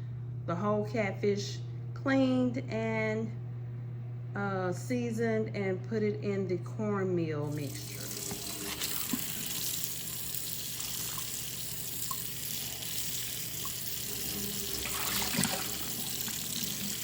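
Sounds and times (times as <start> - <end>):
faucet running into sink: 7.5 - 17.0.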